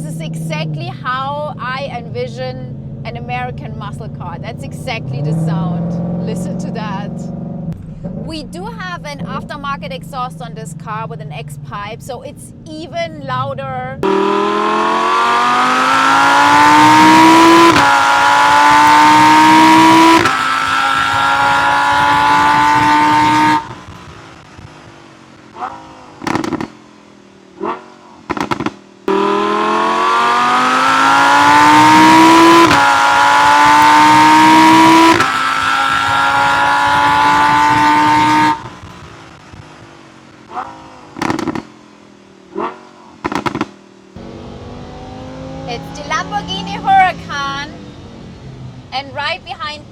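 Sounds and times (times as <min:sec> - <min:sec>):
exhaust pops: 0:00.0 - 0:44.4
sports car engine accelerating: 0:00.0 - 0:49.9.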